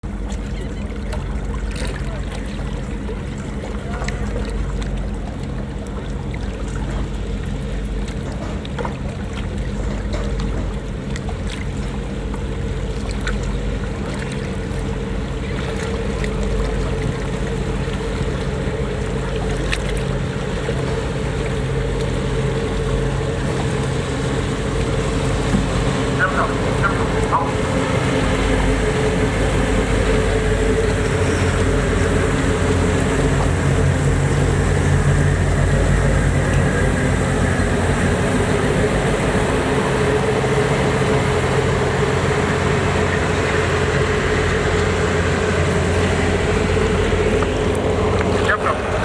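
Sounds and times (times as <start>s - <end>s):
boat engines droning: 0.0s - 49.0s.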